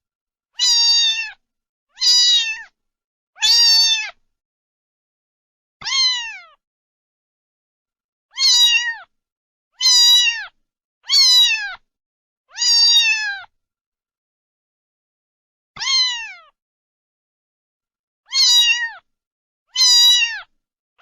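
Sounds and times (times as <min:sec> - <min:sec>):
cat meowing: 0:00.6 - 0:02.8, 0:03.4 - 0:04.2, 0:05.8 - 0:06.6, 0:08.3 - 0:09.1, 0:09.8 - 0:11.8, 0:12.5 - 0:13.5, 0:15.8 - 0:16.6, 0:18.3 - 0:19.1, 0:19.8 - 0:20.5.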